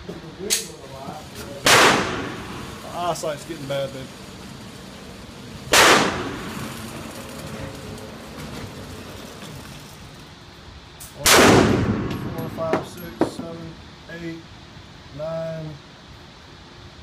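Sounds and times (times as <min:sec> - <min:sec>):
pistol shots: 0:01.6 - 0:02.6, 0:05.7 - 0:06.5, 0:11.2 - 0:12.3.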